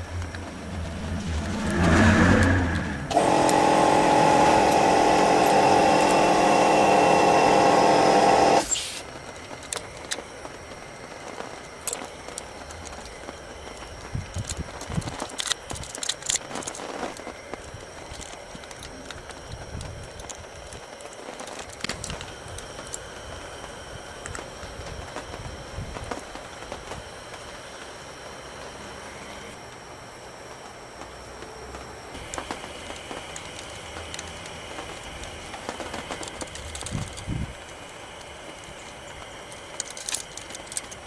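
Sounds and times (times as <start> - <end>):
power tool running: 0.1 - 27.0, 32.1 - 41.0
small metal clicks and clinks: 36.1 - 41.0.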